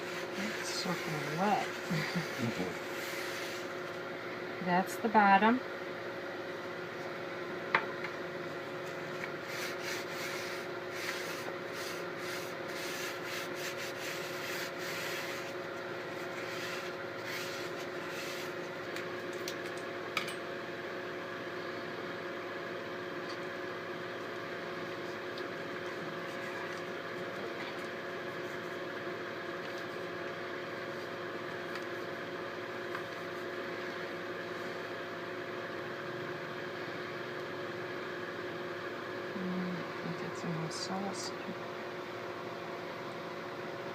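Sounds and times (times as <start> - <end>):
rubbing and scraping strokes: 0.0 - 3.8, 8.8 - 18.7
two-tone mechanical hum: 0.0 - 43.9.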